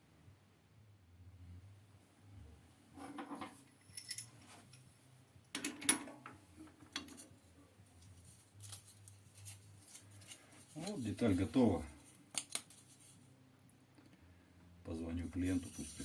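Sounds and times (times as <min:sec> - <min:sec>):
faint low hum: 0:00.0 - 0:16.0
metal parts and tools clinking: 0:03.1 - 0:04.9.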